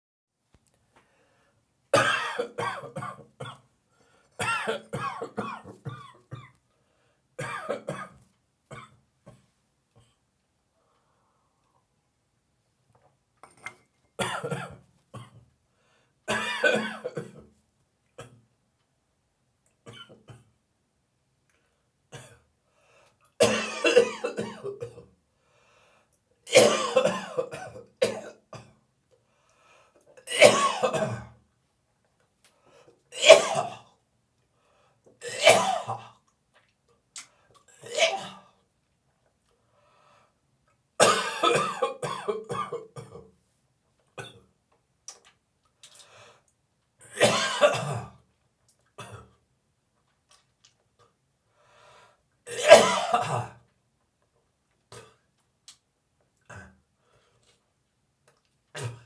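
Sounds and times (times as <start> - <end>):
person coughing: 2.0 - 3.6, 4.4 - 6.6, 7.4 - 8.9, 14.2 - 15.4, 16.3 - 17.4, 23.4 - 25.1, 26.5 - 28.7, 30.3 - 31.3, 33.2 - 33.8, 35.2 - 36.1, 37.8 - 38.4, 41.0 - 43.3, 47.0 - 48.2, 52.5 - 53.6.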